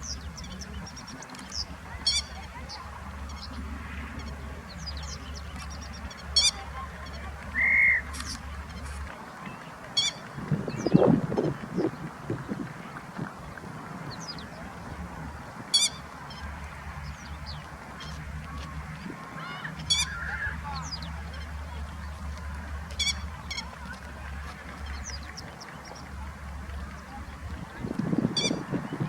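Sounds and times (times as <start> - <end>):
small birds chirping: 0.0 - 29.0
lapwing nasal calls: 19.4 - 20.9.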